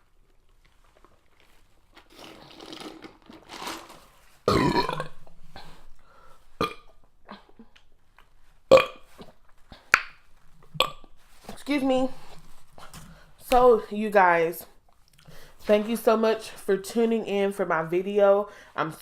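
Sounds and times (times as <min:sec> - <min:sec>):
woman burping: 0:04.5 - 0:05.2, 0:06.6 - 0:07.8.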